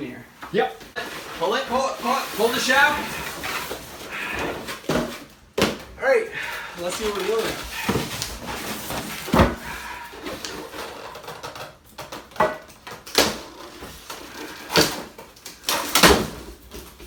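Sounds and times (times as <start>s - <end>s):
packaging rustling: 0.9s - 5.5s, 6.4s - 17.0s
knocks and thuds on packaging: 4.8s - 6.0s, 7.7s - 9.8s.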